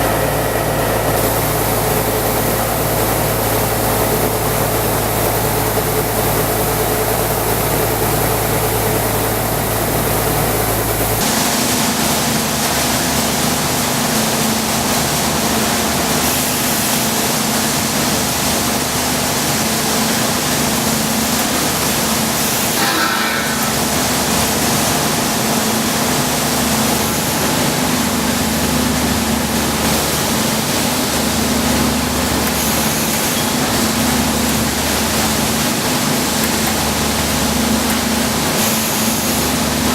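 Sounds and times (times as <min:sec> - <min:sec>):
harvesting machine running: 0:00.0 - 0:39.9.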